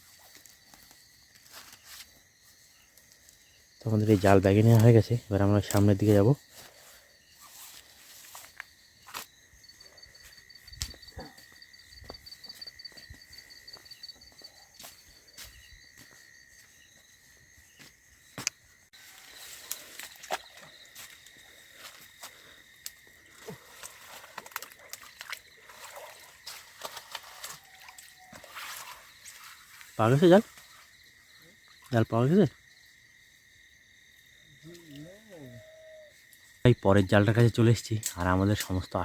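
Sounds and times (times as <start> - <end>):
crickets calling: 0.0 - 39.0
footsteps: 6.1 - 30.9.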